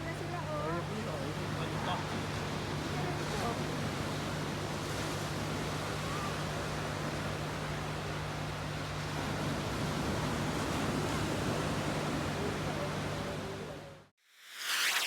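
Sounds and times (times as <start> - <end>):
steady rushing noise: 14.4 - 15.0.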